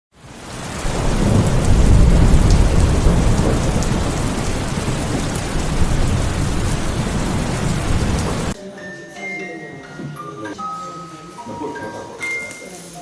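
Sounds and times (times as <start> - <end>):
heavy rain: 0.1 - 8.6
thunder rumbling: 0.2 - 8.6.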